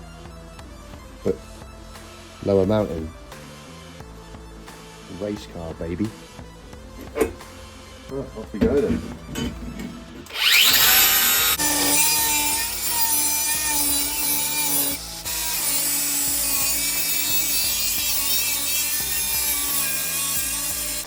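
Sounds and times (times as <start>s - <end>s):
power cutter cutting sheet metal: 8.8s - 21.0s.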